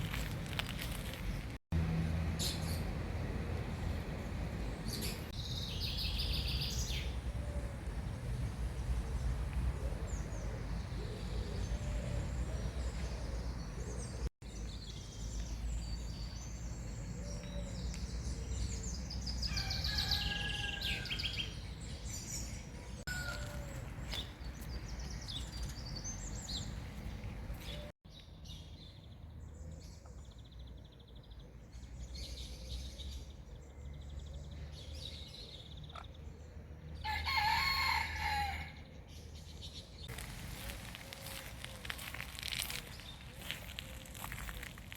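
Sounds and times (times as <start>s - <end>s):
songbirds chirping: 0.0s - 44.9s
rooster crowing: 19.5s - 21.4s, 23.1s - 23.8s, 37.0s - 38.8s.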